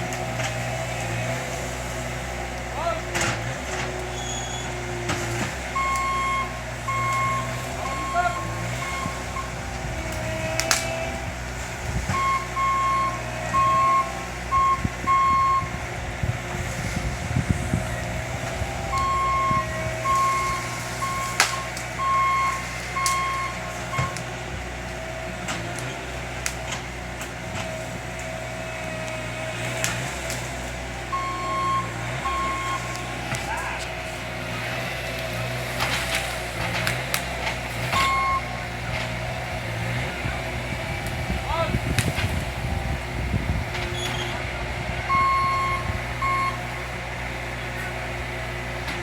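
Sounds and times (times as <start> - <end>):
heavy vehicle engine running: 0.0 - 49.0
reversing alarm beeps: 5.8 - 9.6, 12.1 - 15.8, 18.4 - 24.2, 31.1 - 33.0, 38.0 - 38.5, 45.1 - 46.6.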